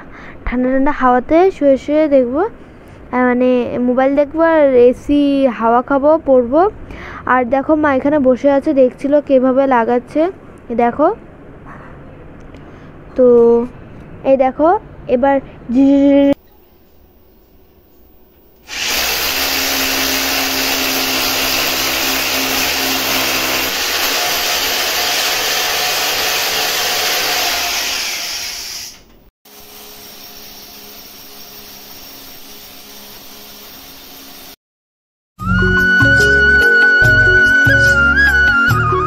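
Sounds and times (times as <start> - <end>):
power drill motor whine: 18.7 - 29.0.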